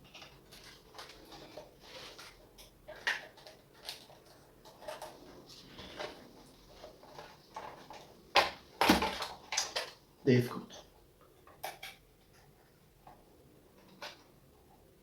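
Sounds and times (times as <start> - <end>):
plastic parts clicking: 7.1 - 10.0.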